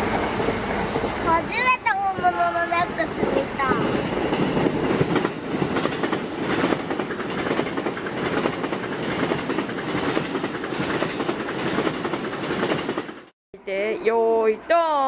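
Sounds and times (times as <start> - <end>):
electric train passing: 0.0 - 14.8.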